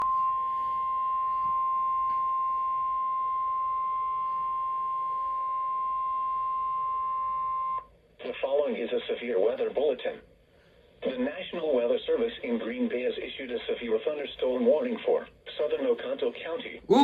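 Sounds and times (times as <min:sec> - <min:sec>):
faint radio hiss: 0:08.0 - 0:16.9.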